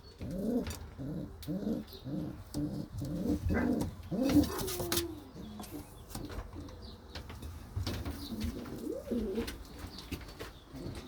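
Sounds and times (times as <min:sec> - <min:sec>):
pigeons cooing: 0:00.0 - 0:06.0, 0:08.2 - 0:09.9.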